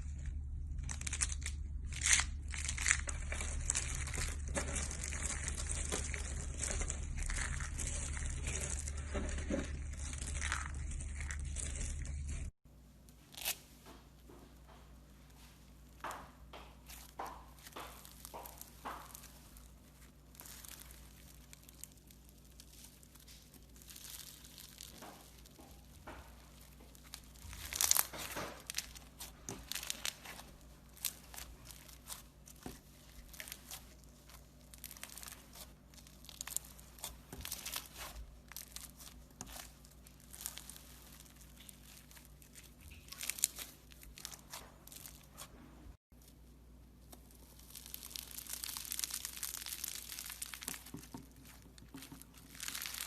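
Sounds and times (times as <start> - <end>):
brittle material crunching: 0.0 - 12.6, 16.9 - 53.0.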